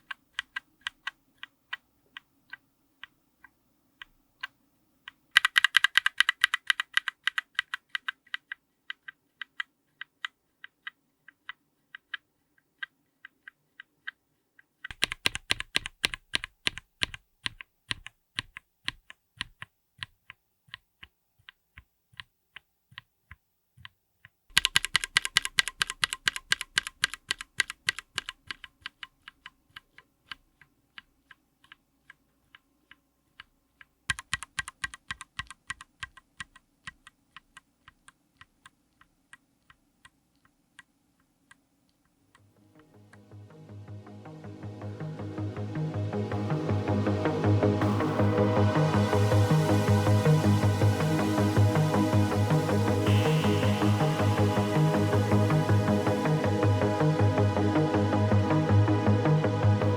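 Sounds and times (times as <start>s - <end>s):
mechanical keyboard keystrokes: 5.1s - 12.2s, 14.8s - 21.8s, 23.8s - 32.6s, 34.1s - 39.8s.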